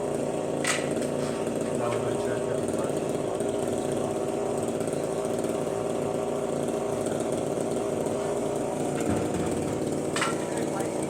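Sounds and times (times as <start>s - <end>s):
small motor buzzing: 0.0s - 11.0s.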